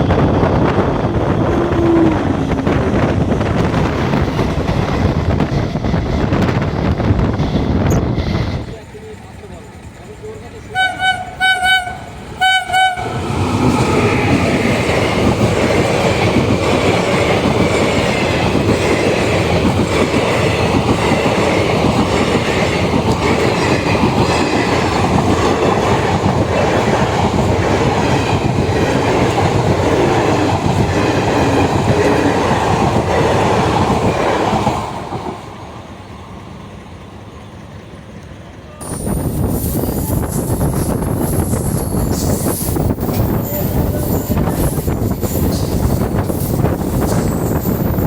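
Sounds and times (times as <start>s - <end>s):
train rumbling past: 0.0s - 48.0s.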